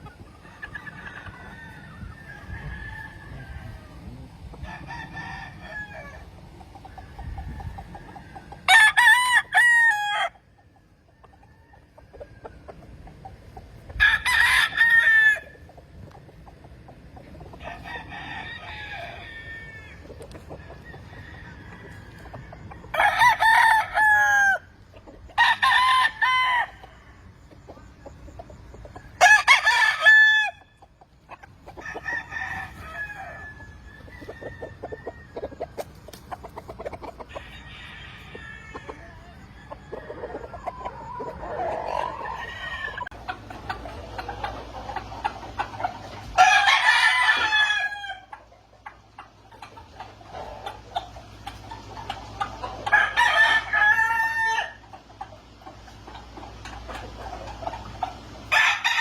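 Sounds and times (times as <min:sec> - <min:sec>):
distant roosters crowing: 0:00.0 - 0:59.0
rooster crowing: 0:00.4 - 0:12.7, 0:14.0 - 0:15.6, 0:17.6 - 0:24.8, 0:25.4 - 0:27.3, 0:29.2 - 0:30.7, 0:31.7 - 0:35.9, 0:36.8 - 0:43.4, 0:45.8 - 0:48.5, 0:52.6 - 0:55.0, 0:58.5 - 0:59.0.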